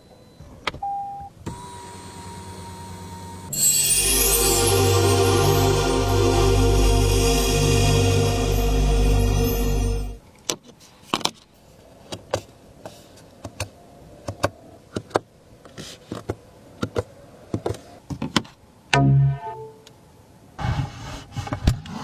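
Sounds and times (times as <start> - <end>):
background music: 3.5 - 10.2.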